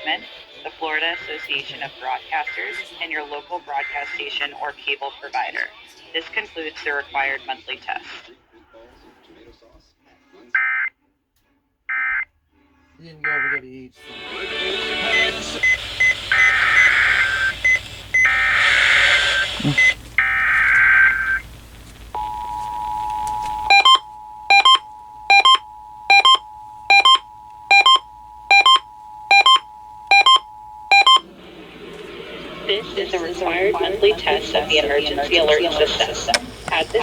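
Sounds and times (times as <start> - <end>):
two-tone attention signal: 14.4 - 21.4, 22.2 - 37.0
data tone bursts: 14.4 - 21.5, 22.2 - 37.0
short beeps: 22.2 - 36.8.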